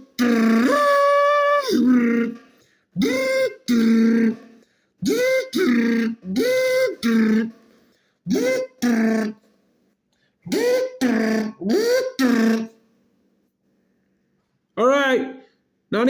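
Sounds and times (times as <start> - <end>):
person imitating impact wrench: 0.0 - 9.5, 10.4 - 12.8.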